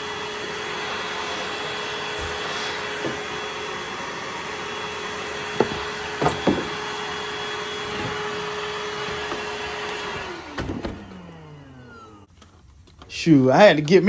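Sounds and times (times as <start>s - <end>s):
vacuum cleaner motor whine: 0.0s - 14.0s
sharp knocks: 5.5s - 7.0s.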